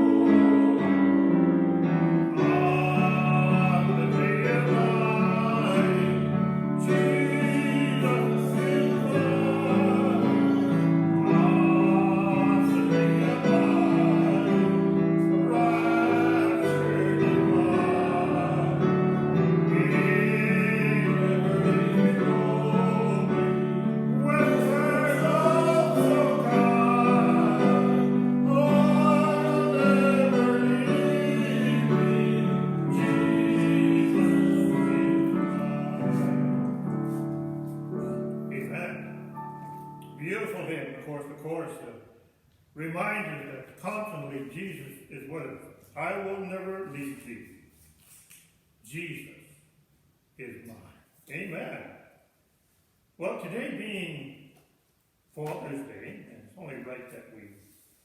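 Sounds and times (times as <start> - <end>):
voices singing worship song: 0.0 - 39.2
instrumental accompaniment: 0.0 - 40.8.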